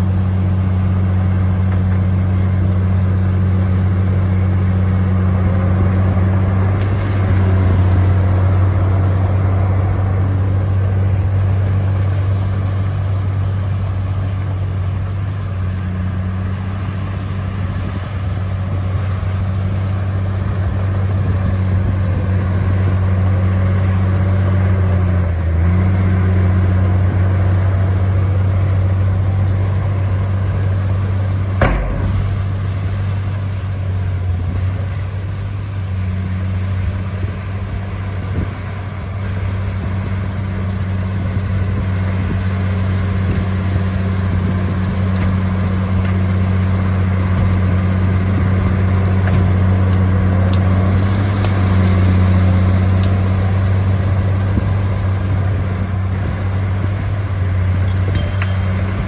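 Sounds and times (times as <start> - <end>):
bulldozer diesel engine droning: 0.0 - 59.0.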